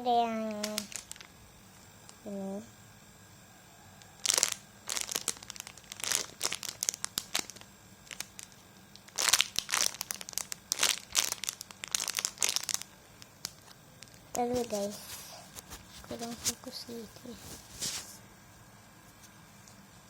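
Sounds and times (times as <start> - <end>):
plastic crinkling: 0.4 - 1.4, 4.0 - 18.2.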